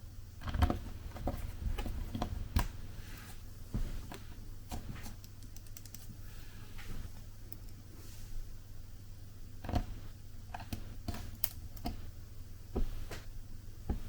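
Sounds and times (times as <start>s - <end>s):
small parts clicking: 5.2s - 6.1s, 9.6s - 12.0s.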